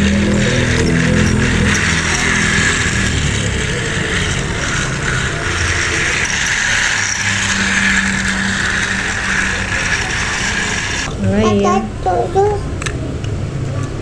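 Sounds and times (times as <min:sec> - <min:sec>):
plastic gears rattling: 0:00.0 - 0:11.1
toy train motor whirring: 0:00.0 - 0:12.6.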